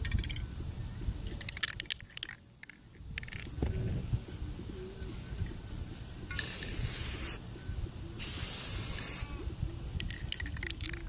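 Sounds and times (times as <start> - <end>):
spray can hissing: 6.3 - 7.4, 8.2 - 9.3.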